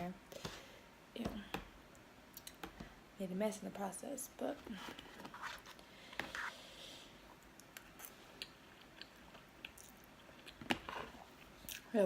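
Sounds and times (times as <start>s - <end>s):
person chewing noodles: 7.3s - 11.9s.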